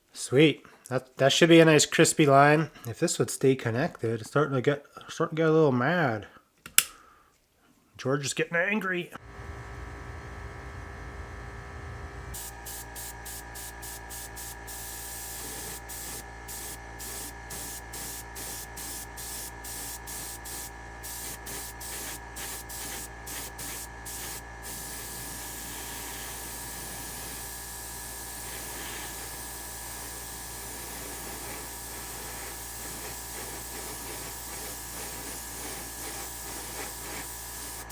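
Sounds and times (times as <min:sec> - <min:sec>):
steady hum: 0:09.2 - 0:37.9
airbrush spraying paint: 0:12.4 - 0:37.9.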